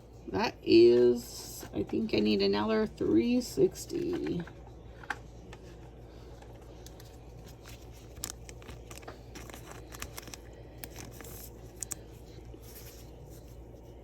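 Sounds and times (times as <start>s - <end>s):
low steady hum: 0.0s - 14.0s
card sleeves clicking and crinkling: 4.9s - 13.9s.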